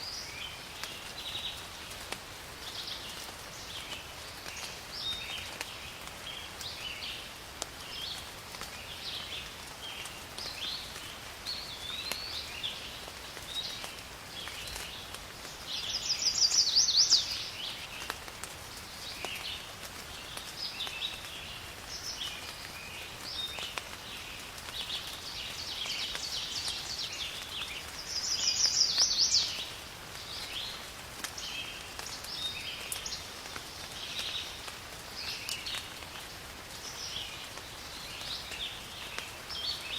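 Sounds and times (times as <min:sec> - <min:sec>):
light rain: 0:00.0 - 0:39.9
small birds chirping: 0:02.6 - 0:39.9
trilled birdsong: 0:11.5 - 0:18.1, 0:18.9 - 0:30.8.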